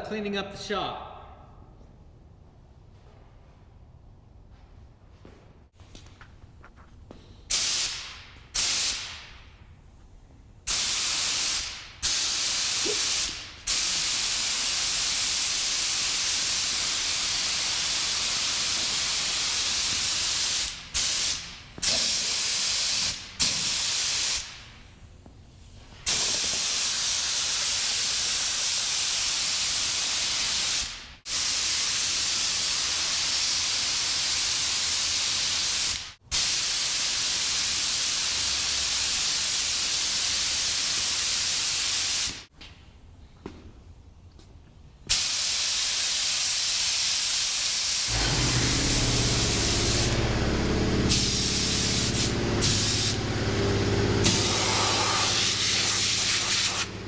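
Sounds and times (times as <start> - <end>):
air blow gun hissing: 7.5 - 9.3, 10.7 - 24.7, 45.1 - 57.0.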